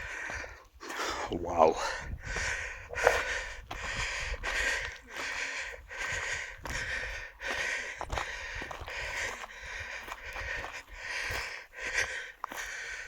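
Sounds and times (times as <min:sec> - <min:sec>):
person breathing heavily: 0:00.0 - 0:13.0.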